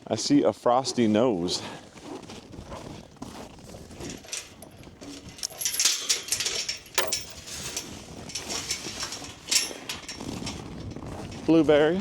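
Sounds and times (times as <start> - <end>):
footsteps crunching on frozen ground: 1.5 - 4.3.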